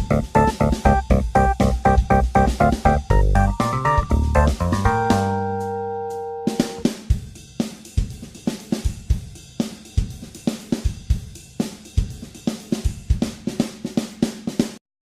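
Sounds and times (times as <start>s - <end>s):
held music chord: 0.0s - 6.9s
drum kit beat: 0.0s - 14.8s.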